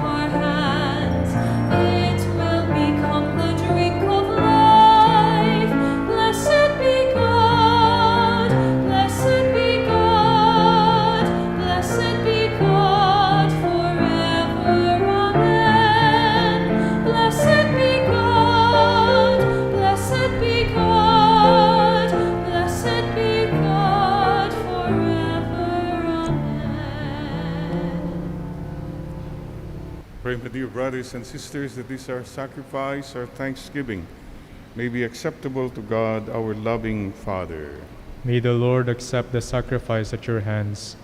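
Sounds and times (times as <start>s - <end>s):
person singing with vibrato: 0.0s - 28.7s
sustained instrumental accompaniment: 0.0s - 30.5s.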